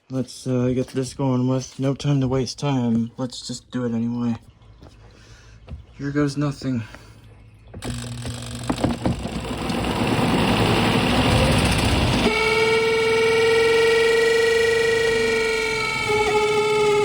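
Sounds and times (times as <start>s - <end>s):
spin dryer howling: 7.8s - 17.0s
spin dryer rattling: 7.8s - 17.0s.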